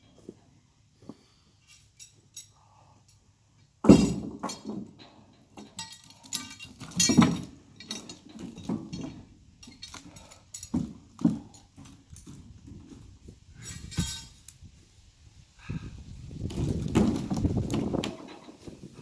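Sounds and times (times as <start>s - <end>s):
metallic clanks and knocks: 3.8s - 11.6s.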